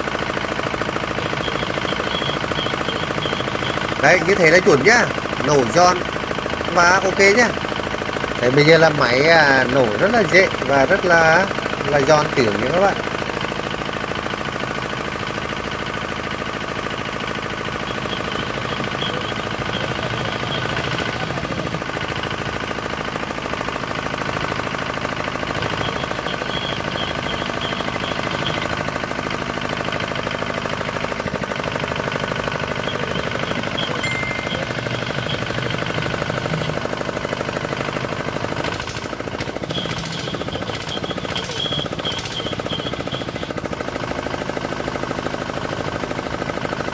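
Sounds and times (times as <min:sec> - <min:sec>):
diesel engine running: 0:00.0 - 0:46.9
sharp clicks: 0:38.6 - 0:42.7.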